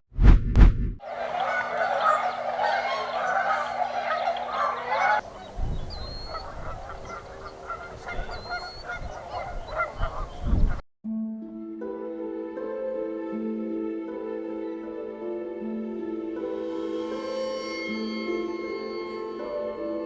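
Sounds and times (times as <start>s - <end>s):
swans honking: 1.0s - 10.8s.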